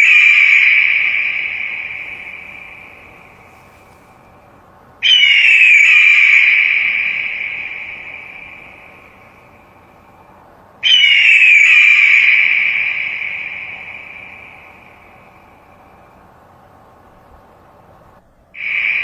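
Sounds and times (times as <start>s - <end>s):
eagle screaming: 0.0s - 4.0s, 5.0s - 9.4s, 10.8s - 15.6s, 18.6s - 19.0s.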